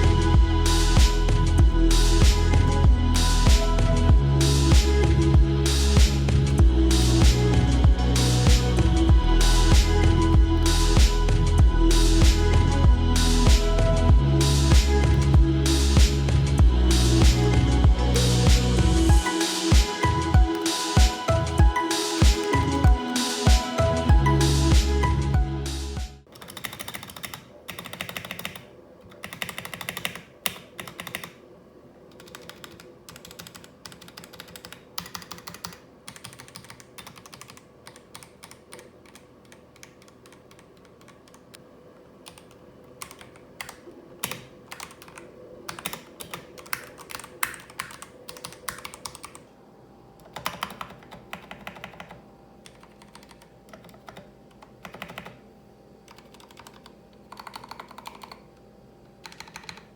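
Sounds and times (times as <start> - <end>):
mechanical keyboard typing: 26.3 - 31.4, 32.1 - 41.5, 42.2 - 49.5, 50.2 - 55.4, 56.1 - 58.5, 59.2 - 59.9.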